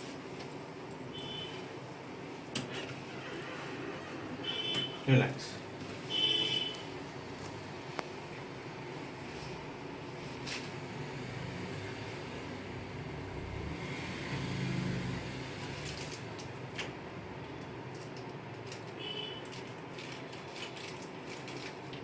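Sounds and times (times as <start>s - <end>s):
faint clicks and rustles: 17.6s - 22.0s.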